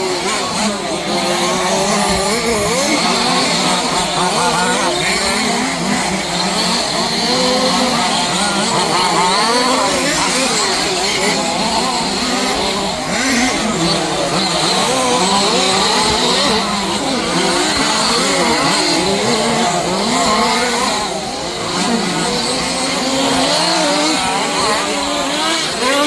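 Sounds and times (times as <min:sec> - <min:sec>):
small engines revving: 0:00.0 - 0:26.0.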